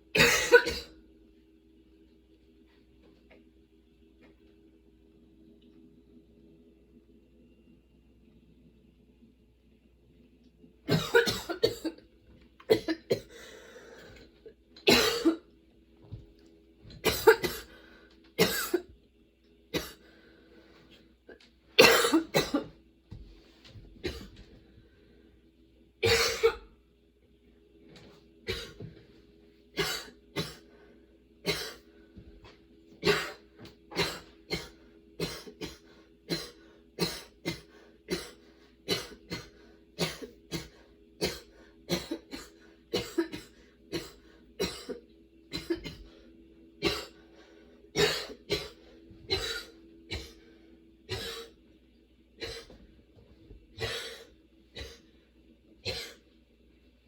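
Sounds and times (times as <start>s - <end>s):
woman coughing: 0.1s - 1.0s, 10.9s - 12.0s, 12.7s - 13.3s, 14.8s - 15.5s, 17.0s - 17.7s, 18.4s - 18.9s, 21.8s - 22.8s, 24.0s - 24.4s, 26.0s - 26.7s, 28.5s - 28.9s, 29.8s - 30.6s, 31.5s - 31.8s, 33.0s - 46.1s, 46.8s - 47.2s, 48.0s - 50.4s, 51.1s - 51.6s, 52.4s - 52.8s, 55.8s - 56.2s.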